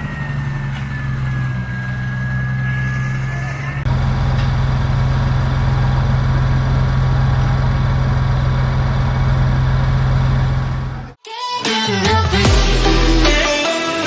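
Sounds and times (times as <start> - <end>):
heavy engine humming: 0.0 - 11.2.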